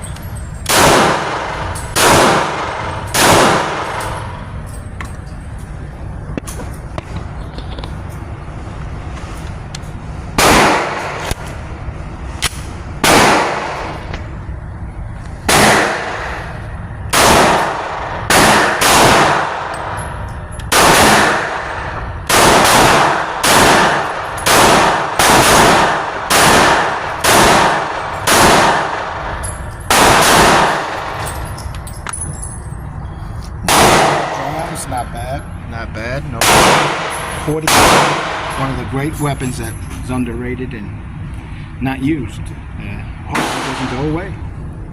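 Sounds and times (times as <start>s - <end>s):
pistol shots: 0.6s - 4.4s, 10.4s - 11.5s, 12.4s - 14.1s, 15.4s - 20.0s, 20.6s - 31.3s, 33.6s - 34.6s, 36.4s - 38.7s, 43.3s - 44.1s.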